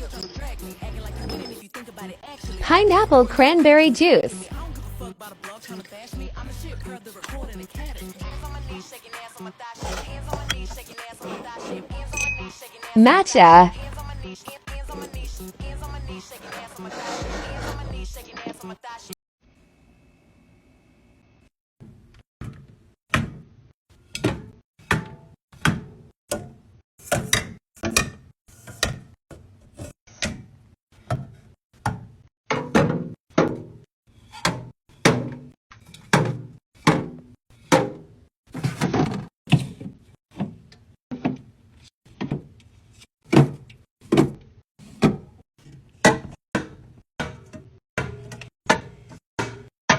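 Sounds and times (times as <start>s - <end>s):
containers thunking into fridge: 31.9s - 33.8s, 34.4s - 39.8s.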